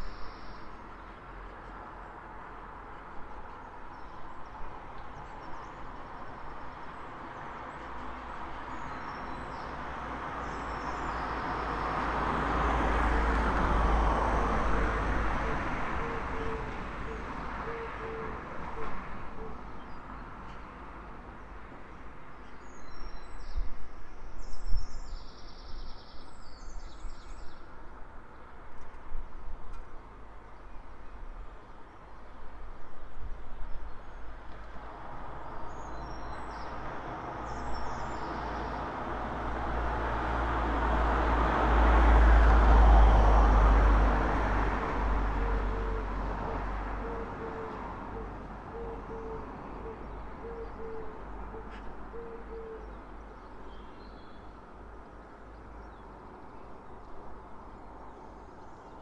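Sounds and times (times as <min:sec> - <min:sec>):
road vehicle passing: 0:09.8 - 0:19.2, 0:34.7 - 0:59.0.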